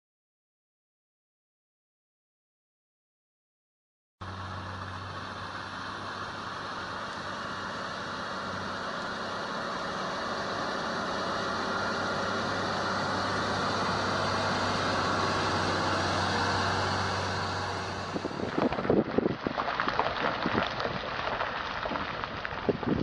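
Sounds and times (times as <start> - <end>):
heavy vehicle engine running: 4.2 - 23.0
rough crackling noise: 14.5 - 23.0.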